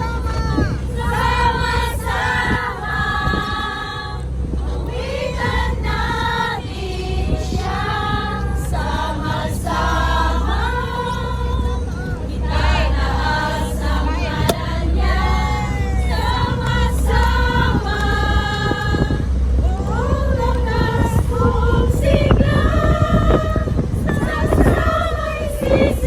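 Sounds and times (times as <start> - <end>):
group singing worship song: 0.0 - 26.0
low rumble: 0.0 - 26.0.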